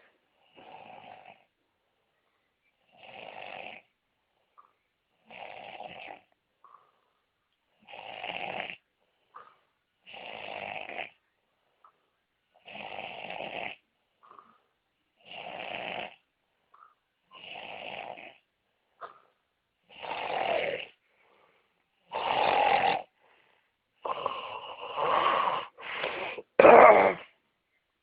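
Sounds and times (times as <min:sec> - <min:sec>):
person snoring loudly: 0:07.9 - 0:08.8, 0:10.1 - 0:11.2, 0:15.2 - 0:16.2, 0:17.4 - 0:18.4, 0:19.9 - 0:21.0, 0:22.1 - 0:23.1, 0:24.0 - 0:27.3.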